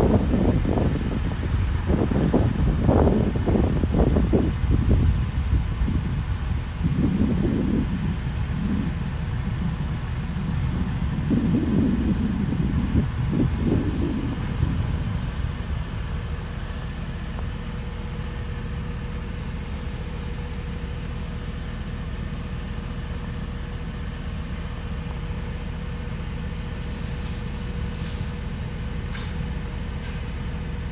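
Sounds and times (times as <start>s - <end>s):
low mechanical hum: 0.0s - 30.9s
faint short hisses: 26.8s - 28.4s.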